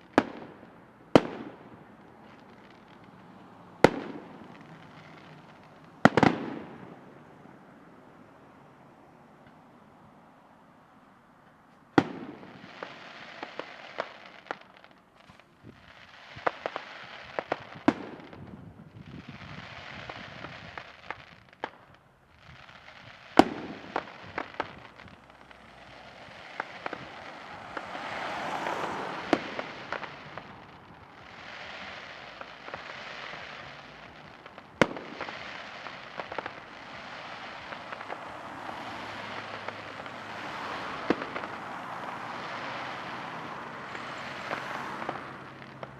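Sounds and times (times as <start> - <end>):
fireworks crackling: 0.0 - 45.9
firework shells bursting: 23.3 - 42.9.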